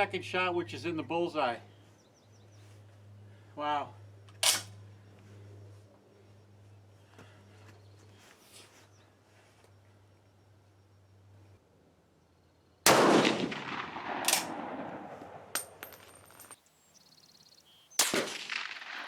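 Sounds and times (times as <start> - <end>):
rifle gunshot with echo: 12.9 - 15.6, 18.0 - 19.0.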